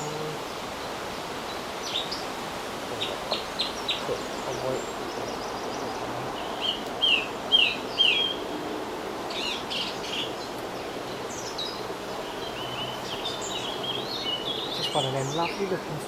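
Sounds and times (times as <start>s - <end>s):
background hiss: 0.0s - 16.0s
small birds singing: 0.0s - 16.0s.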